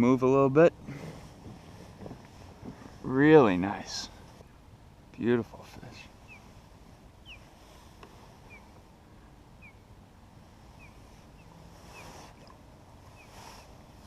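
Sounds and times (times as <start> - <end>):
kayak on water: 0.0 - 14.0.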